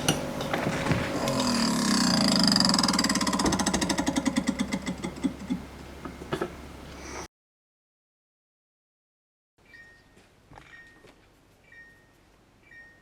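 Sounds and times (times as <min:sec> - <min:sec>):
refrigerator fan grinding: 0:00.0 - 0:06.7.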